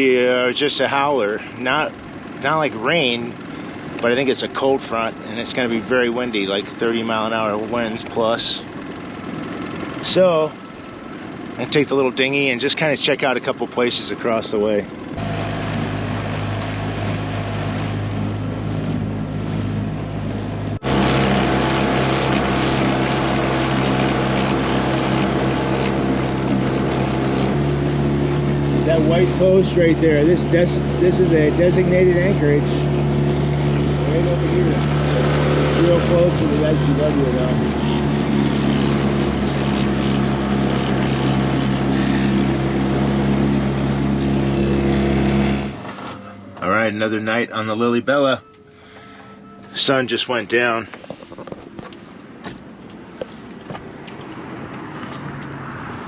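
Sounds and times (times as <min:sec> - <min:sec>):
outboard motor running: 0:00.0 - 0:56.0
water noise: 0:14.0 - 0:46.1.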